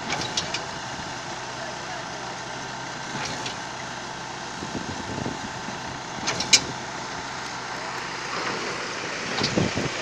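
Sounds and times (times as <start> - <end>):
concrete mixer pump running: 0.0 - 10.0.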